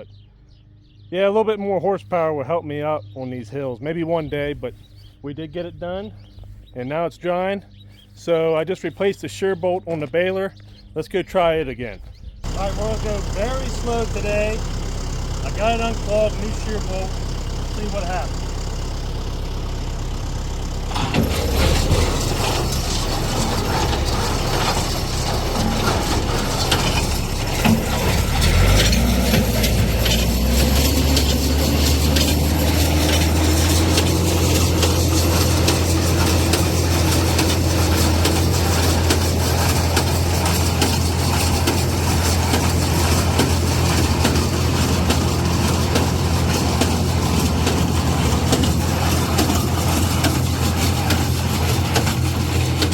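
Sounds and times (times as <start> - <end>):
tractor engine running: 10.6 - 52.9
baler clattering and ratcheting: 12.4 - 52.9.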